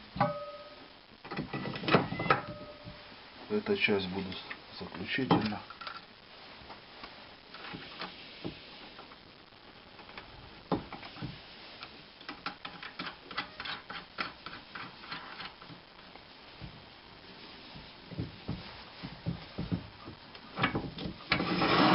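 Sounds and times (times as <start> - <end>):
knock: 18.1 - 21.2.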